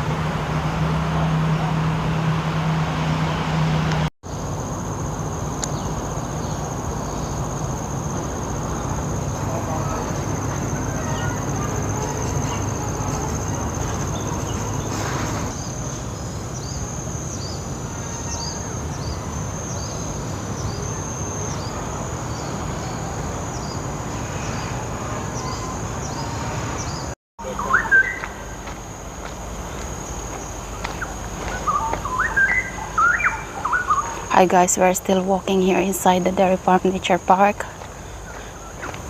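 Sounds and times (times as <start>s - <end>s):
distant traffic: 0.0s - 39.0s
insects droning: 0.0s - 39.0s
insect chirps: 4.3s - 39.0s
bird chirping: 9.5s - 28.5s, 30.4s - 34.7s.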